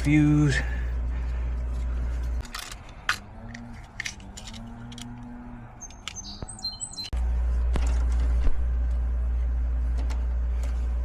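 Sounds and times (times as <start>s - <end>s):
steady low rumble: 0.0s - 11.0s
small parts clicking and rattling: 1.6s - 6.4s.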